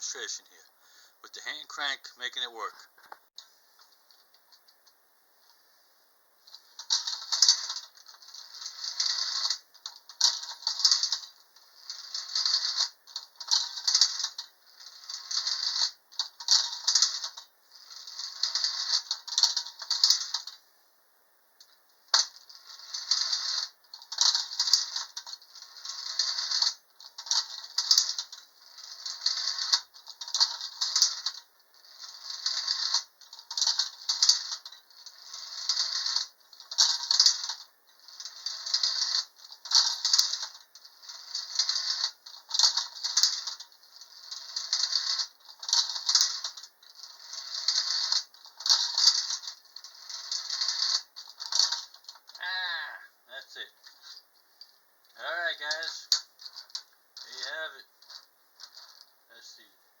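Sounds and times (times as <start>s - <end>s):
tin toy rattling on metal track: 6.6s - 20.6s, 22.1s - 52.4s, 55.5s - 59.1s.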